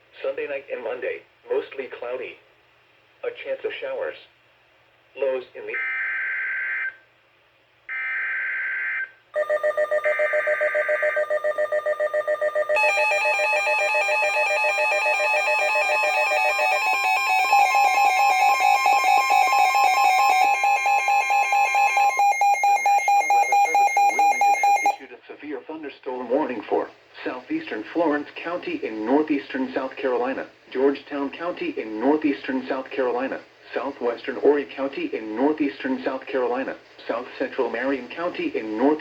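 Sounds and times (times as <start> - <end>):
rapidly pulsing electronic alarm tone: 9.4 - 25.0.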